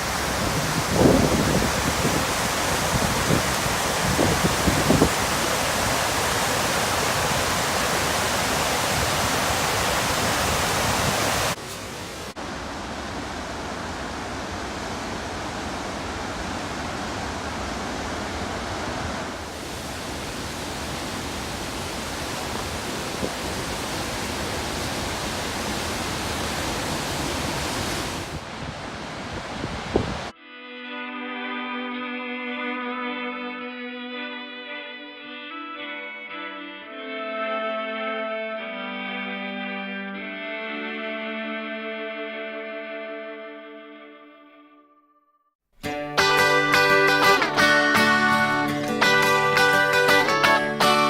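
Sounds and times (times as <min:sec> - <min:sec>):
waterfall roaring: 0:00.0 - 0:30.3.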